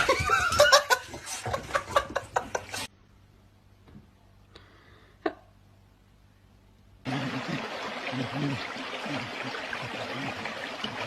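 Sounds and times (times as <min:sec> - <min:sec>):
person laughing: 0:00.0 - 0:02.9.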